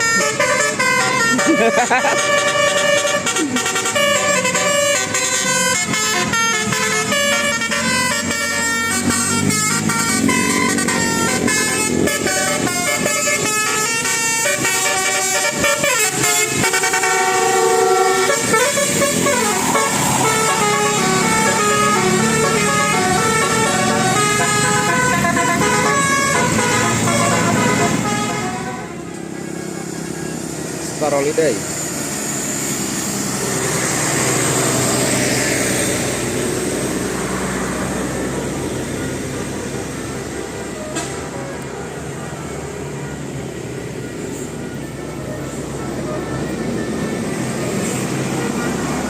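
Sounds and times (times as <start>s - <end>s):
bus horn playing a melody: 0.0s - 29.2s.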